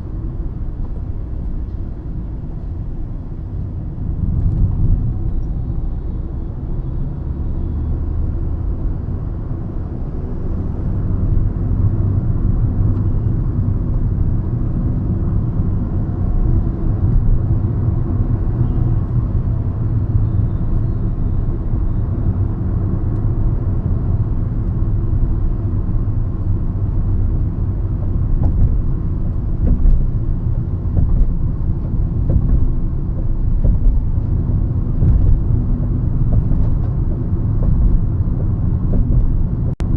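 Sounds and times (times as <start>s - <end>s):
car engine and tyre rumble: 0.0s - 39.9s
bumps and light clicks: 28.0s - 39.8s.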